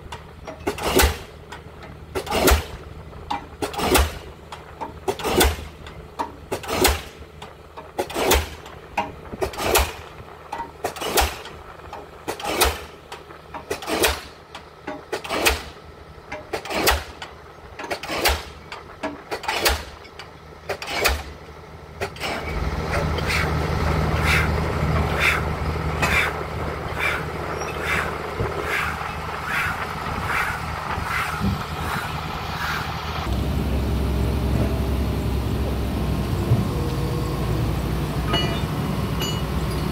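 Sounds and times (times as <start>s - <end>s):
crane diesel engine running: 0.0s - 39.9s
pile hammer blows: 7.9s - 21.4s, 22.0s - 33.3s.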